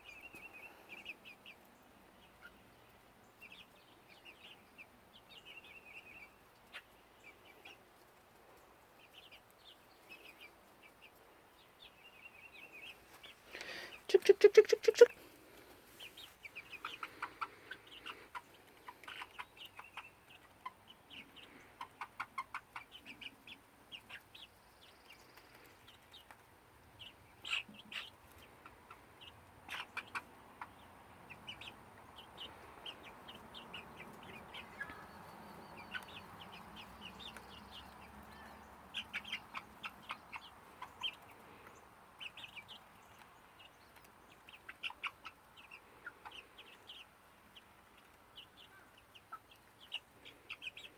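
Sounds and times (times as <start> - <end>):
hens clucking softly: 12.6 - 50.9.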